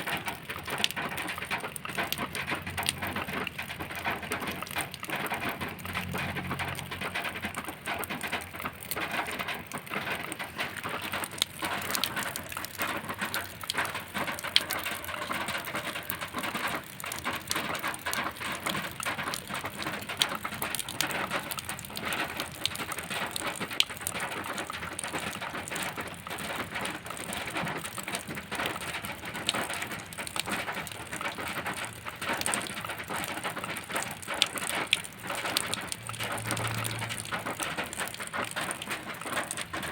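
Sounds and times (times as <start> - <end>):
rain on sheet metal: 0.0 - 39.9.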